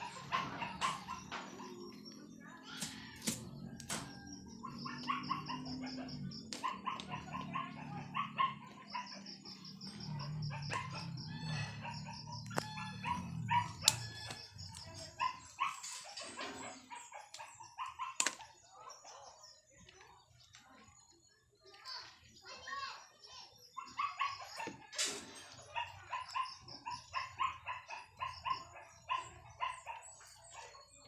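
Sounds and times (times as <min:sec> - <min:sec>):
pigs calling: 0:00.0 - 0:18.4.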